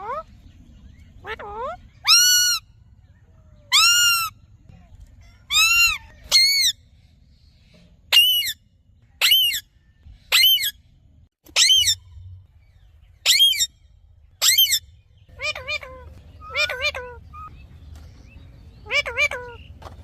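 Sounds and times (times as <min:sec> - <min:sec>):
parrot squawking: 0:01.2 - 0:02.6, 0:03.7 - 0:04.3, 0:05.5 - 0:06.8, 0:08.1 - 0:08.6, 0:09.2 - 0:09.6, 0:10.3 - 0:10.7, 0:11.5 - 0:12.0, 0:13.2 - 0:13.7, 0:14.4 - 0:17.5, 0:18.8 - 0:19.6.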